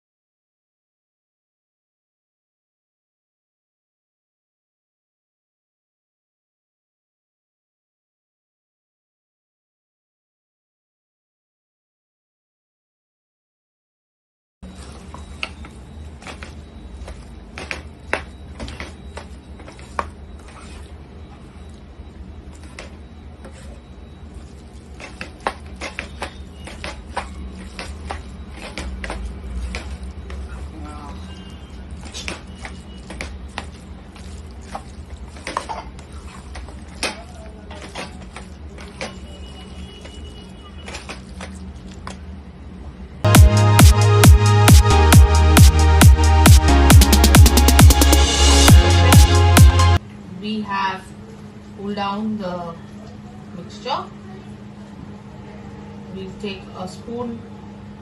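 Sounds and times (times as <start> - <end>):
loud electronic dance music: 43.3 - 50.0.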